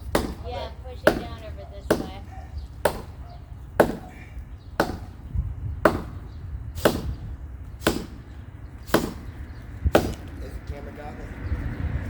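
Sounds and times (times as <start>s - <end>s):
hand tool chopping wood: 0.0s - 3.2s, 3.8s - 4.2s, 4.8s - 5.2s, 5.8s - 6.2s, 6.8s - 7.2s, 7.8s - 8.2s, 8.9s - 9.3s, 9.9s - 10.4s.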